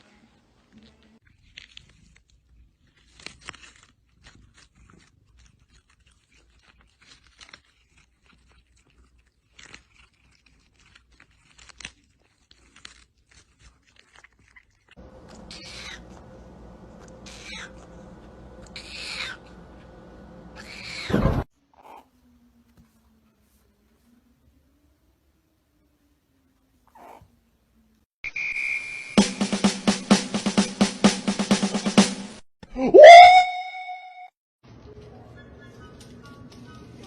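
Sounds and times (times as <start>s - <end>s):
crunches and clicks of chewing: 0.7s - 18.8s
steady hum: 15.0s - 21.4s
high-pitched falling calls: 32.8s - 34.3s.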